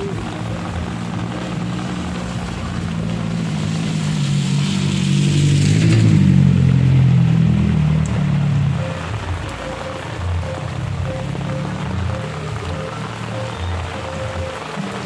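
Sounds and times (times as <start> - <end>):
vehicle engine passing by: 0.0 - 15.0.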